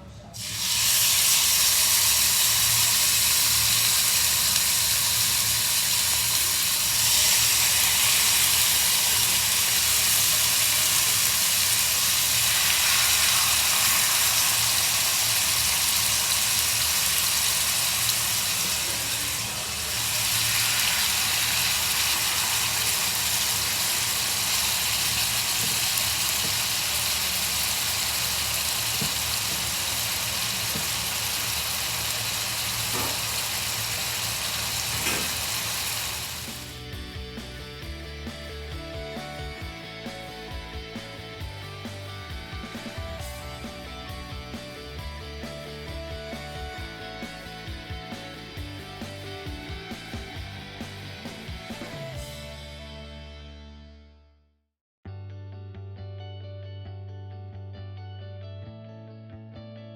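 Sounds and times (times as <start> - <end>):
steaks sizzling in a skillet: 0.4 - 36.9.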